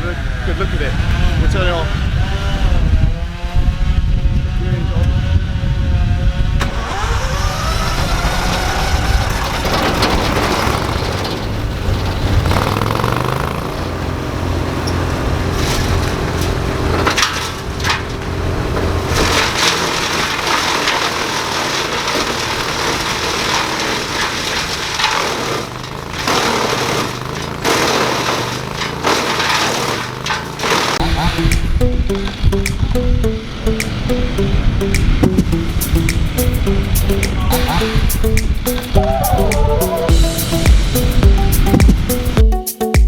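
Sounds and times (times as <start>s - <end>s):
rough grinding noise: 0.0s - 42.4s
wood crackling and snapping: 6.6s - 32.4s
wood-processing machine engine: 6.6s - 42.4s.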